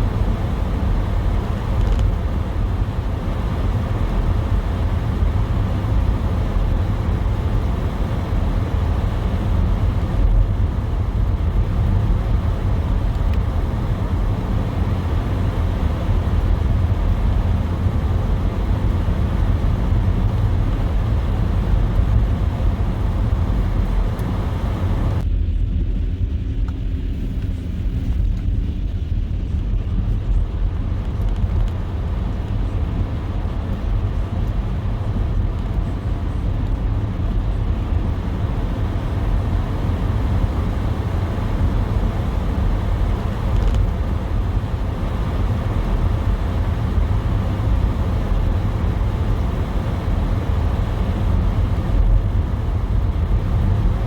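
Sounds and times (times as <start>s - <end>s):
tyres on snowy road: 0.0s - 25.2s
car engine rumble: 0.0s - 54.0s.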